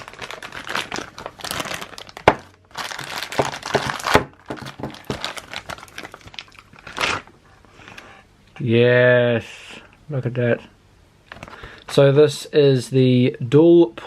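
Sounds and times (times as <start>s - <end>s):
packaging crinkling and rustling: 0.0s - 7.4s, 11.3s - 11.6s.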